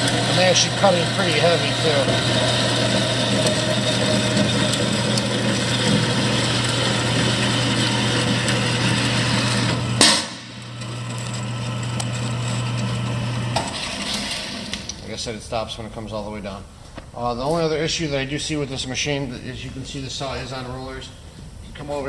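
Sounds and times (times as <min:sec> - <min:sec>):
saw blade cutting metal: 0:00.0 - 0:12.8
bandsaw motor humming: 0:00.0 - 0:15.1.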